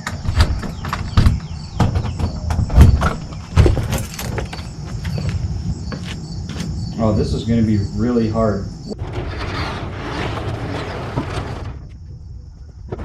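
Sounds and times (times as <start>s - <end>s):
objects knocking and clunking: 0.0s - 5.4s
insects trilling: 0.0s - 13.0s.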